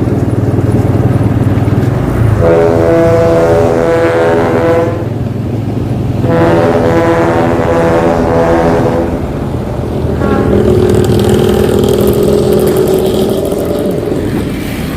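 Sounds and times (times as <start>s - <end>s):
diesel engine running: 0.0s - 14.9s
bus air horn blasts: 2.4s - 5.1s, 6.2s - 9.2s, 10.2s - 10.6s.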